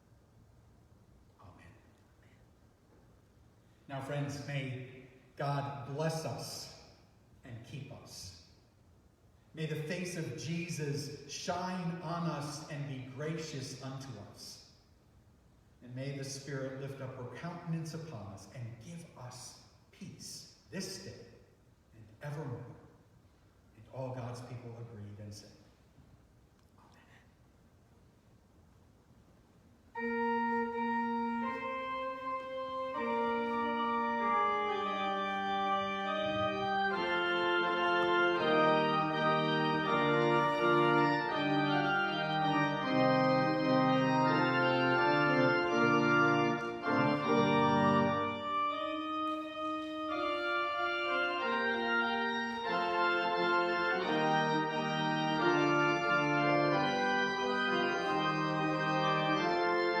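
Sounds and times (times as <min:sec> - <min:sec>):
organ playing sustained chords: 0:03.9 - 0:06.9, 0:09.6 - 0:14.7, 0:29.9 - 1:00.0.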